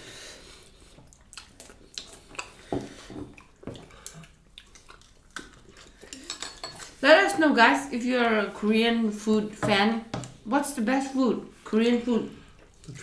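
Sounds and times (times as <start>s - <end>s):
slurping and chewing: 0.3s - 7.0s, 12.4s - 13.0s.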